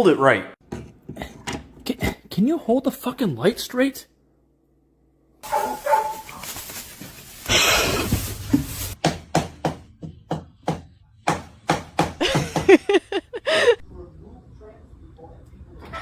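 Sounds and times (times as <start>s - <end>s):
rustling scraping noise: 5.4s - 9.0s.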